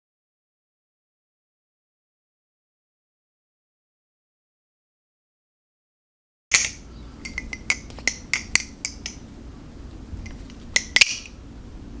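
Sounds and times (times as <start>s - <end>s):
butterfly knife metal clacks: 6.5s - 9.3s, 10.3s - 11.4s.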